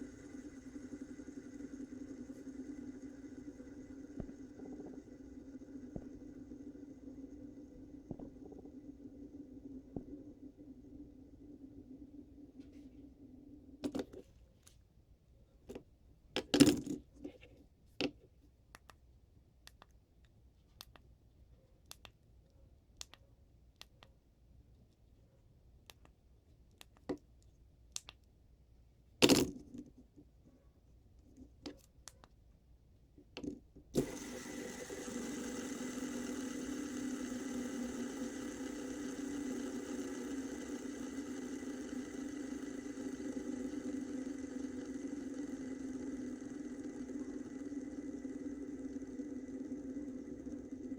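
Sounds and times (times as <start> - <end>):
steady hum with high tone: 0.0 - 14.0, 34.0 - 50.9
fidget spinner clicks and taps: 33.3 - 50.9.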